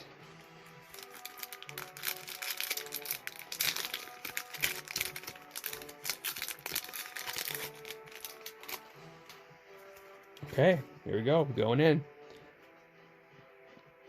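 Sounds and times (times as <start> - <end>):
background music: 0.0 - 14.0
foil wrapper crinkling: 0.8 - 8.9.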